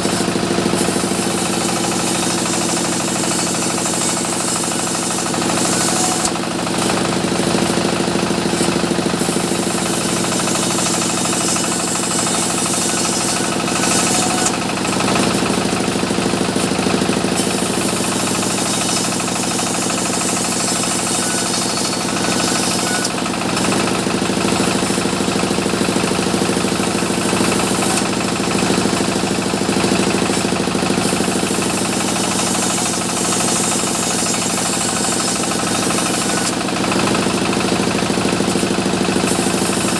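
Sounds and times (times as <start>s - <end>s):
sawmill saw cutting wood: 0.0s - 39.9s.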